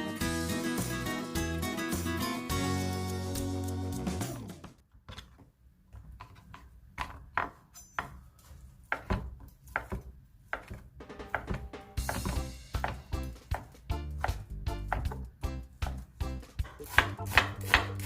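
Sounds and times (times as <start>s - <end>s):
knife chopping on wooden board: 8.8s - 18.0s.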